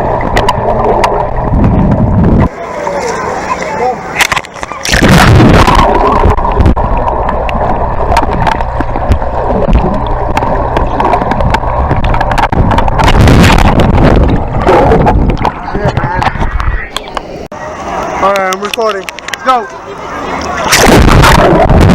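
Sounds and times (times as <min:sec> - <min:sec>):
wind buffeting microphone: 0:00.0 - 0:02.5, 0:08.3 - 0:17.5, 0:20.8 - 0:21.9
water rushing and splashing: 0:00.0 - 0:21.9.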